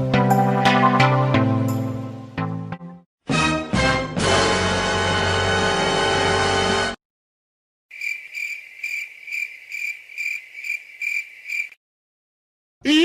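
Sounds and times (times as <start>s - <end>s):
crickets chirping: 7.9s - 11.8s.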